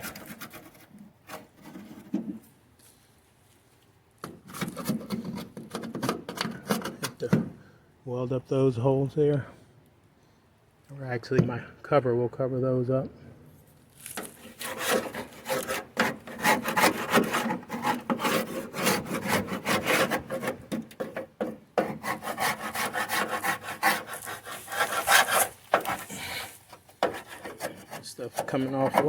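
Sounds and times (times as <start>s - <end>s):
paint being scraped by hand: 14.2s - 29.0s.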